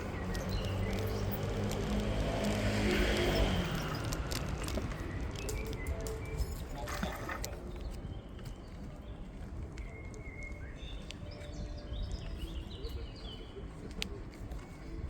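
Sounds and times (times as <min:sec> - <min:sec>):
small birds chirping: 0:00.0 - 0:06.6.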